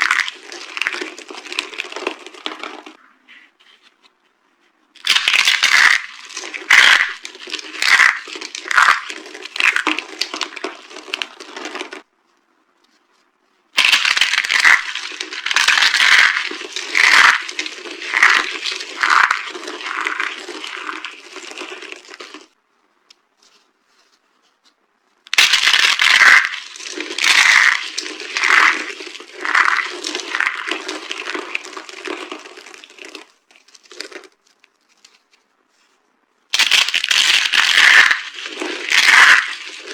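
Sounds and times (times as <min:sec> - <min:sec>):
dry boxes crunching: 0:05.1 - 0:12.0, 0:13.8 - 0:22.4, 0:25.3 - 0:35.1, 0:36.6 - 0:39.9.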